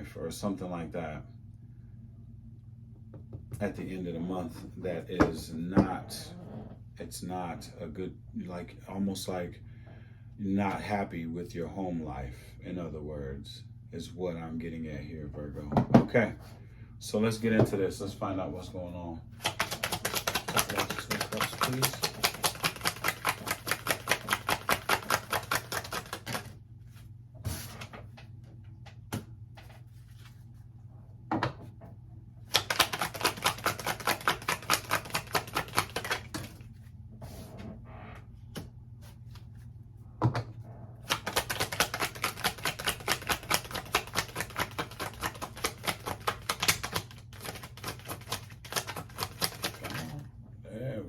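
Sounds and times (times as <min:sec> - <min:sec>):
cards tapping: 0:19.4 - 0:26.6, 0:32.5 - 0:36.6, 0:41.1 - 0:50.1
cards being shuffled by hand: 0:19.4 - 0:28.2, 0:28.8 - 0:30.6, 0:32.5 - 0:37.4, 0:41.1 - 0:50.3.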